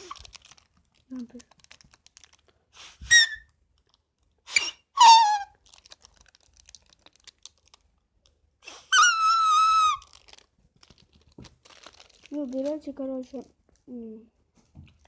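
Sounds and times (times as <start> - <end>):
shrill squealing whistle: 3.0 - 3.4, 4.5 - 5.5, 8.9 - 10.0.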